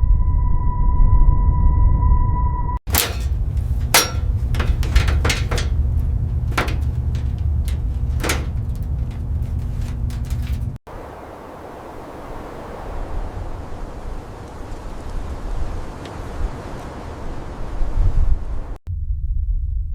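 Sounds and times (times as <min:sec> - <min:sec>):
low steady rumble: 0:00.0 - 0:10.8.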